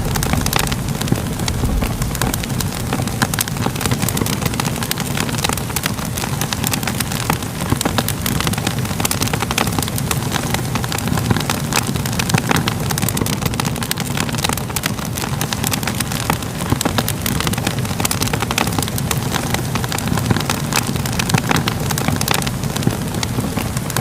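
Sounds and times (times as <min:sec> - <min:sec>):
low rumble: 0:00.0 - 0:05.4
fire crackling and popping: 0:00.0 - 0:24.0.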